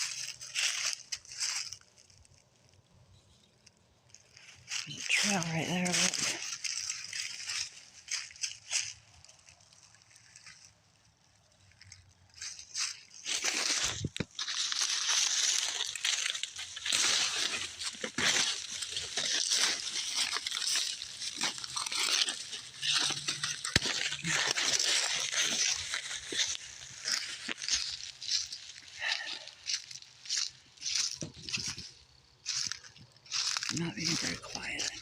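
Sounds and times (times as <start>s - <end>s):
footsteps through corn leaves: 0.0s - 2.4s, 4.1s - 35.0s
stalks snapping: 13.5s - 28.5s.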